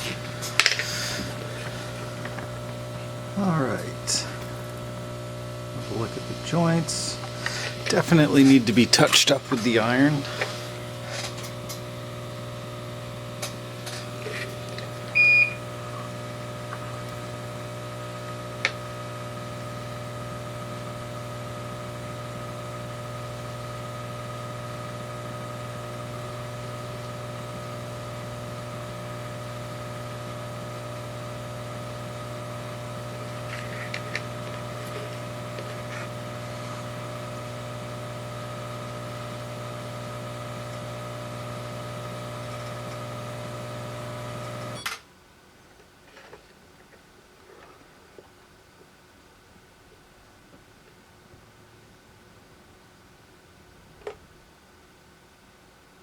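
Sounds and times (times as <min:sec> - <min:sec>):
electrical hum with steady tones: 0:00.0 - 0:45.8.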